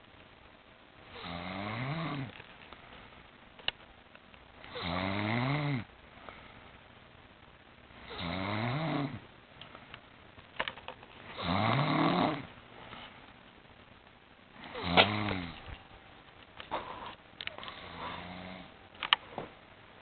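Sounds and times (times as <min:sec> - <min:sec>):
woman snoring loudly: 0:01.1 - 0:02.3, 0:04.7 - 0:05.9, 0:08.1 - 0:09.2, 0:11.3 - 0:12.5, 0:14.7 - 0:15.6, 0:17.7 - 0:18.7.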